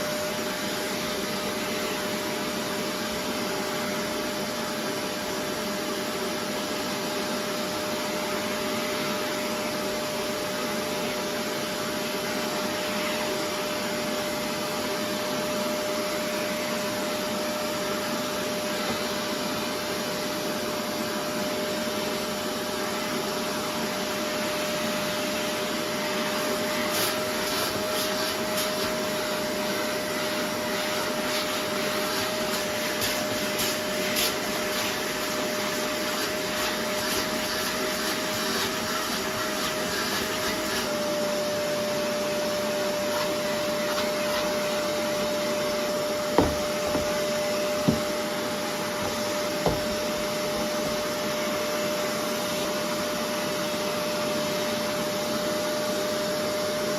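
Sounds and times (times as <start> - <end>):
cleaning machine suction motor: 0.0 - 53.0.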